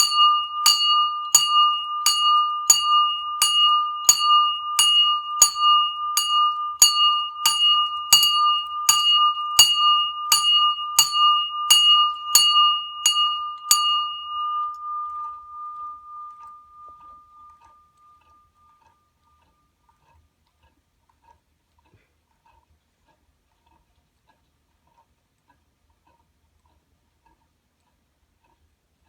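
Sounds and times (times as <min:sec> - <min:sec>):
bell struck repeatedly: 0:00.0 - 0:18.2.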